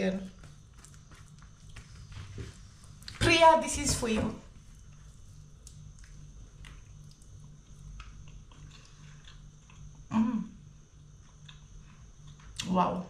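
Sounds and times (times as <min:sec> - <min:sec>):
person chewing food: 0:00.3 - 0:03.2, 0:04.6 - 0:10.1, 0:11.0 - 0:12.6
person humming mm: 0:10.1 - 0:10.6.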